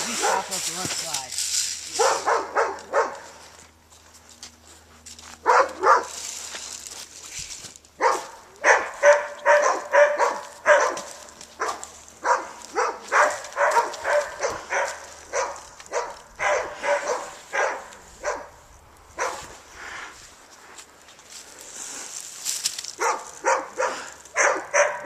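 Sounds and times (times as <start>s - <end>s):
dog barking: 0.1s - 0.6s, 1.9s - 3.3s, 5.4s - 6.2s, 8.0s - 18.6s, 19.2s - 19.5s, 23.0s - 25.0s.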